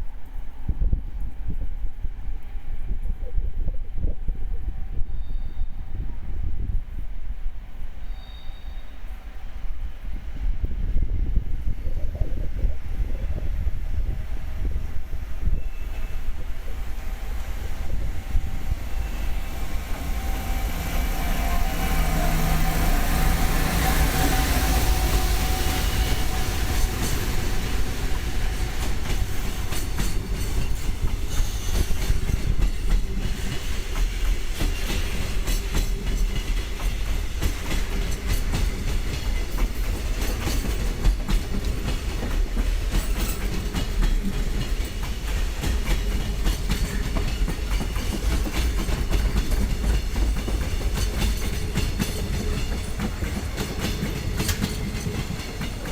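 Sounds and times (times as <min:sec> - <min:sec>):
freight train wheels clacking: 0:15.0 - 0:55.9.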